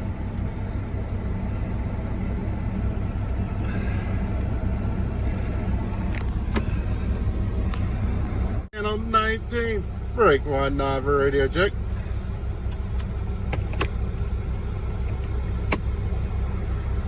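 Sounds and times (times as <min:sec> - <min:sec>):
truck diesel engine idling: 0:00.0 - 0:17.0.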